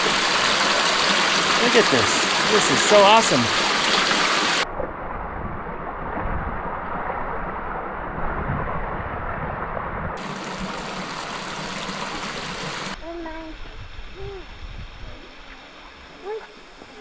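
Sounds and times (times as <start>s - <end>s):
rushing creek water: 0.0s - 4.6s, 10.2s - 13.0s.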